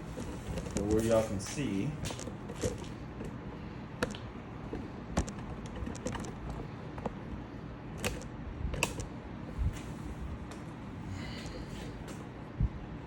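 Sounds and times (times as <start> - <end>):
low steady hum: 0.0 - 13.0
clicks and knocks of handling: 0.2 - 3.4, 4.0 - 7.2, 8.0 - 9.1.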